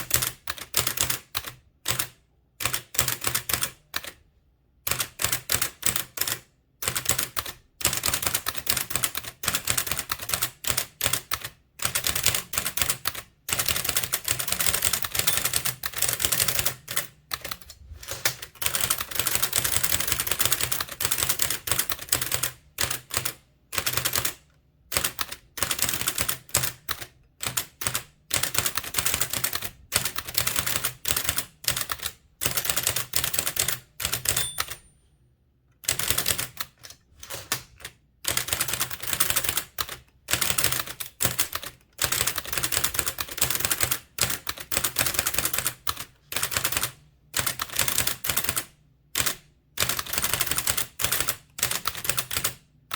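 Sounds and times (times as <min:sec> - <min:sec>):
typewriter clacking: 0:04.9 - 0:24.4, 0:25.0 - 0:34.8.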